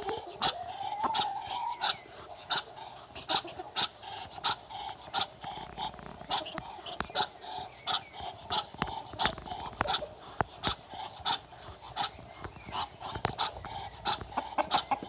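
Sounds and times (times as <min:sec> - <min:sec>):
duck hissing: 0:00.0 - 0:15.0.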